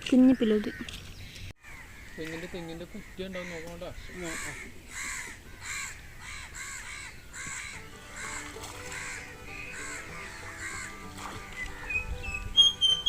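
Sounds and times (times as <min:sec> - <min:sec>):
crow cawing: 0:01.6 - 0:11.1
background music with steady tones: 0:07.5 - 0:13.0.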